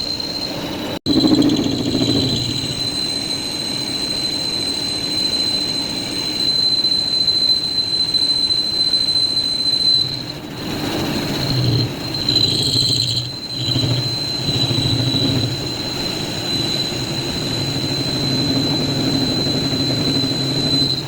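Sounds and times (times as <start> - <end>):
metal lathe turning steel: 9.4 - 21.0.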